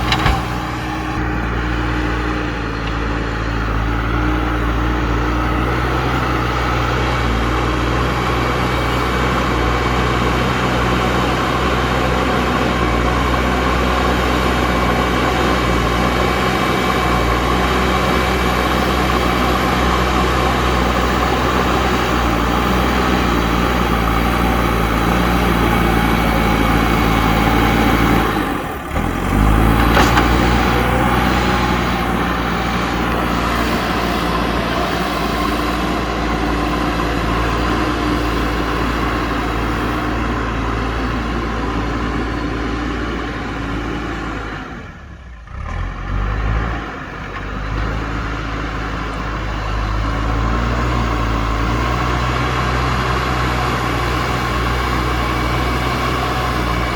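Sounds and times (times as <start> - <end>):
diesel engine running: 0.0 - 56.9.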